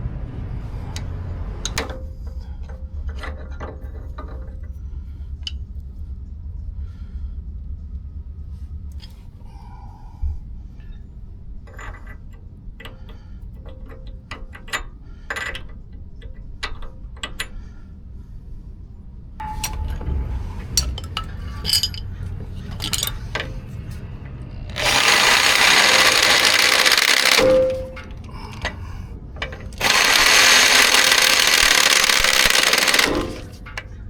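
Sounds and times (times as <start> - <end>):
hand tools clinking on steel: 19.4 - 33.9.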